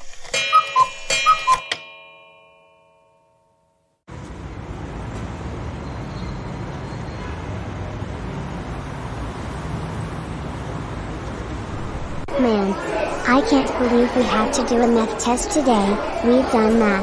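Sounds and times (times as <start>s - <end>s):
road traffic rumble: 4.1s - 17.0s.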